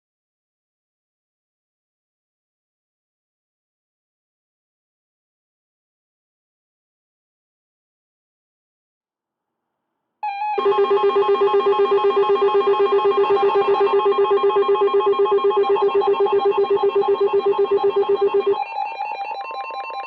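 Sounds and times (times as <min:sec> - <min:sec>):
pulsing electronic alarm beep: 0:10.2 - 0:20.0
steady high tone: 0:10.2 - 0:20.0.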